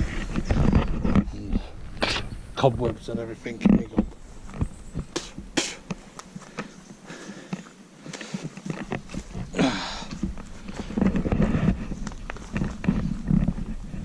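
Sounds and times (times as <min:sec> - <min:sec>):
footsteps through undergrowth: 0:03.7 - 0:14.0
short grunt: 0:09.5 - 0:10.1.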